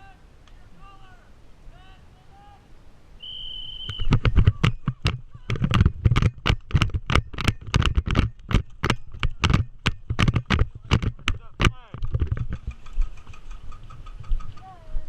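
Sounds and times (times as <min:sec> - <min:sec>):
sharp knocks and clicks with rattling: 0:03.9 - 0:14.8.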